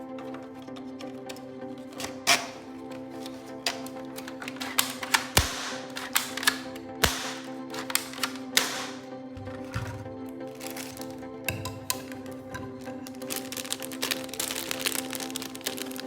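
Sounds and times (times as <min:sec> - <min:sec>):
background music: 0:00.0 - 0:16.0
plastic toy gun clicks: 0:03.7 - 0:09.1.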